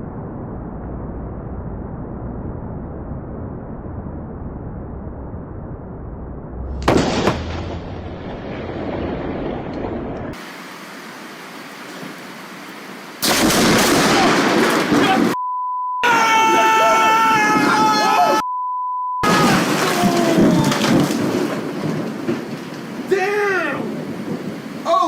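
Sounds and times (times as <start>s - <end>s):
loud thunder crack and rumble: 0.0s - 10.4s, 13.2s - 15.4s, 19.2s - 23.2s, 23.8s - 24.8s
low rushing noise: 0.0s - 13.2s.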